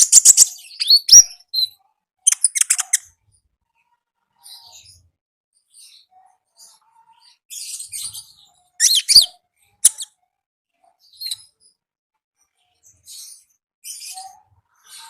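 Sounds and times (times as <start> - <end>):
songbird chirping and twittering: 0.0 - 3.1, 3.8 - 10.2, 10.8 - 11.8.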